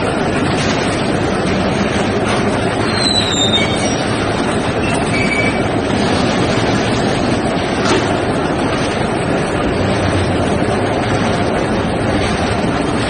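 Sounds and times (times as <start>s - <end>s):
welding machine running: 0.0s - 13.0s
metal on metal squeals: 2.8s - 4.1s, 4.8s - 5.7s.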